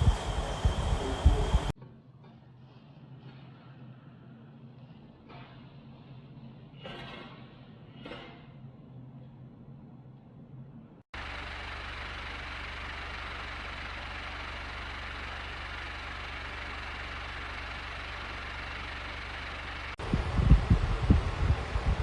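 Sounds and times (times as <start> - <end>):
fan motor hum: 0.0 - 1.8, 8.6 - 22.0
rushing air from fan: 0.0 - 1.8, 11.2 - 22.0
loud irregular low thumps: 20.0 - 22.0.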